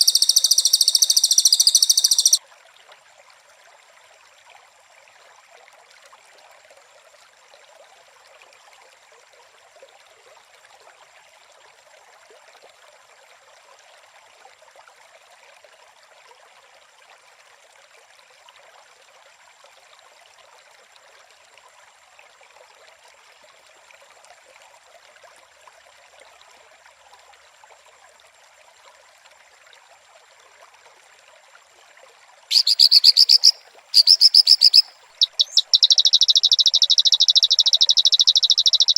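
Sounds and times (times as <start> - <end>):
rapid high-pitched trill: 0.0 - 2.4
thin steady high tone: 0.0 - 2.4, 32.5 - 38.9
trickling stream hiss: 0.0 - 38.9.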